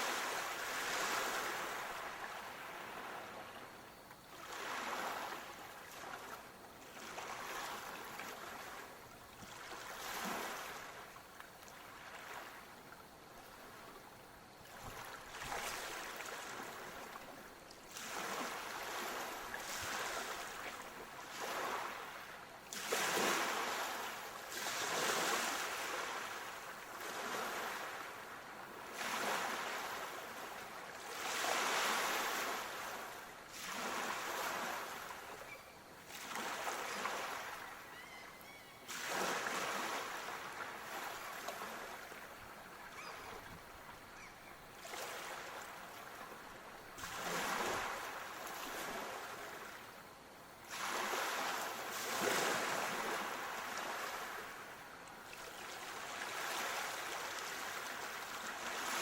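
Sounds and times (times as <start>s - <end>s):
ocean surf washing ashore: 0.0s - 3.7s
waves breaking: 0.0s - 59.0s.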